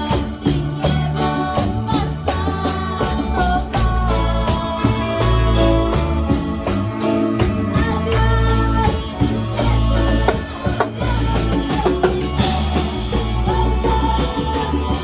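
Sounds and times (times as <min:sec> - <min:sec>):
guitar: 0:00.0 - 0:15.0
steady drum beat: 0:09.7 - 0:13.8.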